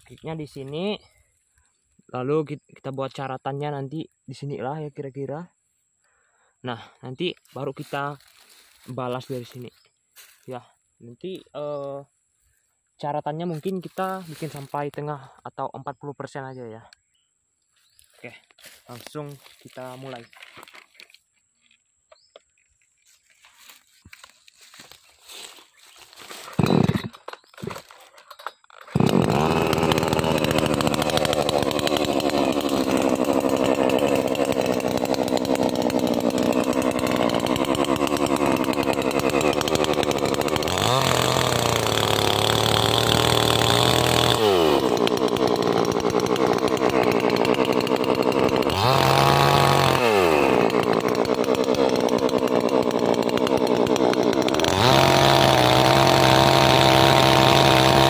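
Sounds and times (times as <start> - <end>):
chainsaw revving: 7.5 - 10.4, 13.6 - 14.9, 17.9 - 21.1, 23.1 - 58.0.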